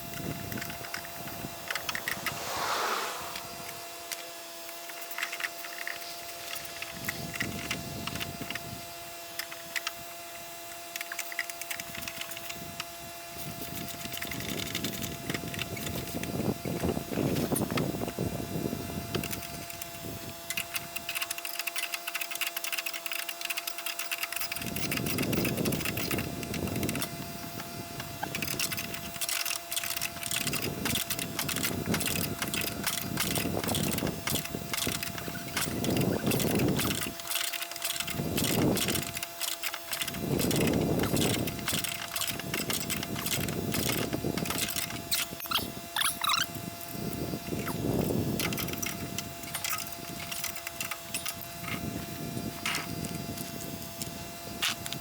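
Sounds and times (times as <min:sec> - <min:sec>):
wind rumbling on microphone: 0:00.0 - 0:04.4, 0:24.6 - 0:37.2, 0:37.9 - 0:39.3, 0:39.9 - 0:55.0.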